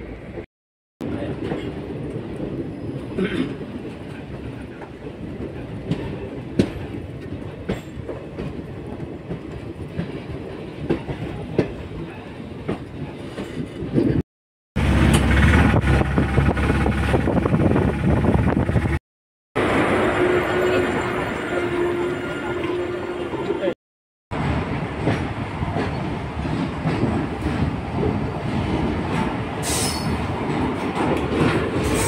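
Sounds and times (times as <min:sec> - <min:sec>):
train wheels clattering on rails: 0:01.1 - 0:14.2, 0:24.8 - 0:32.0
train rumble: 0:14.8 - 0:19.0, 0:19.6 - 0:32.0.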